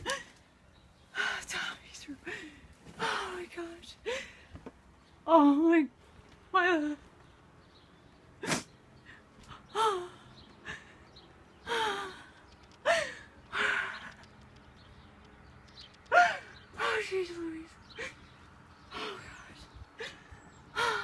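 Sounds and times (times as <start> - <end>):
woman gasping and crying: 11.7 - 14.0, 20.0 - 21.0.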